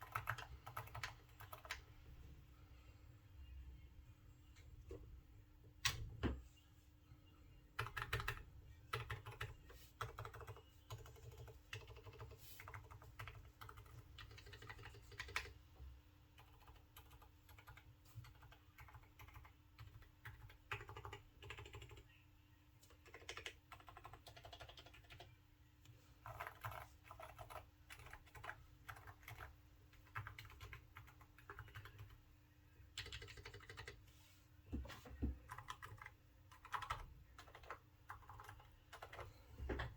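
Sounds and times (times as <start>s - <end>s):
quiet keyboard keystrokes: 0.0s - 1.9s, 7.8s - 15.6s, 16.4s - 22.0s, 22.8s - 32.2s, 32.9s - 34.0s, 34.7s - 39.9s.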